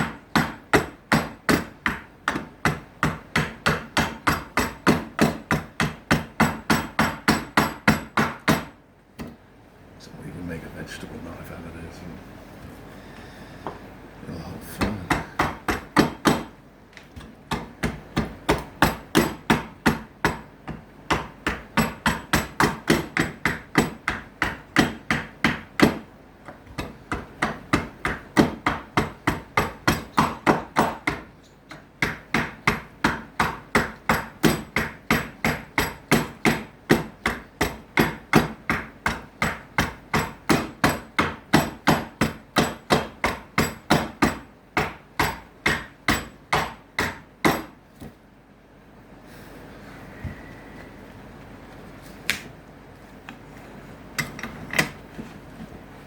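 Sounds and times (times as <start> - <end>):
hand tool striking wood: 0.0 - 9.4, 14.8 - 16.5, 17.2 - 48.1.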